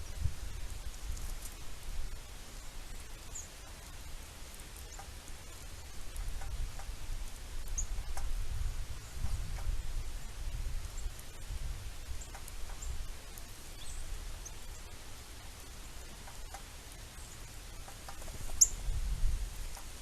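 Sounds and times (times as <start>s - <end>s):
faint ticks and taps: 4.5s - 8.4s, 9.1s - 9.8s, 12.2s - 13.5s, 16.0s - 17.0s, 17.8s - 18.7s
bird chirps: 7.7s - 8.2s, 13.7s - 15.0s, 15.6s - 18.9s.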